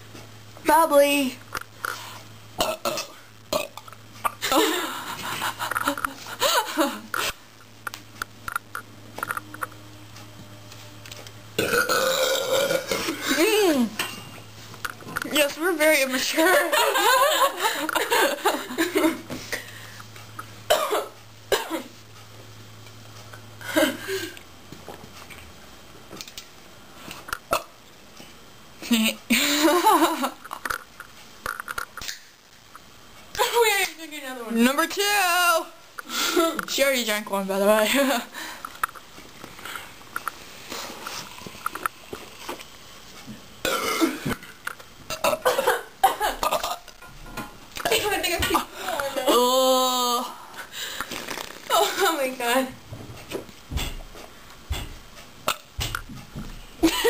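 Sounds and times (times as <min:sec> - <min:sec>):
woman burping and coughing: 0:02.6 - 0:03.8, 0:11.6 - 0:13.6, 0:20.7 - 0:21.9, 0:43.6 - 0:44.4, 0:45.1 - 0:46.9.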